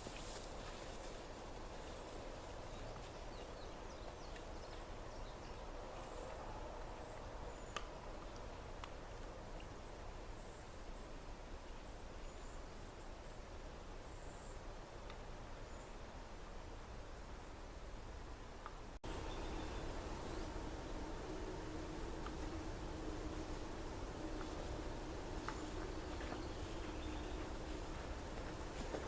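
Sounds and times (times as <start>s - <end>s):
faint outdoor hiss: 0.0s - 29.0s
soft bird chirps: 19.1s - 20.7s, 25.4s - 27.9s.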